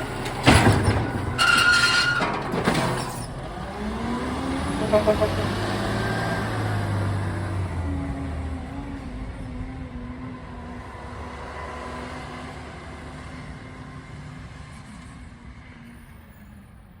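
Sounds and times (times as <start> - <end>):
garbage truck engine droning: 0.0 - 10.9.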